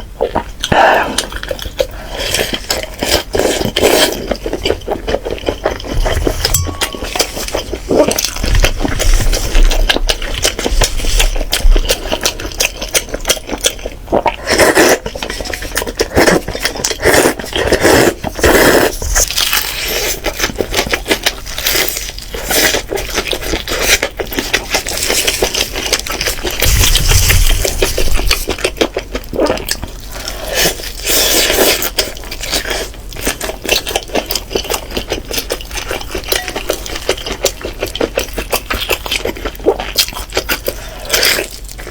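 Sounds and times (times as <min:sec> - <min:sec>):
utensils and dishes clinking: 0:03.7 - 0:10.0, 0:36.1 - 0:37.5.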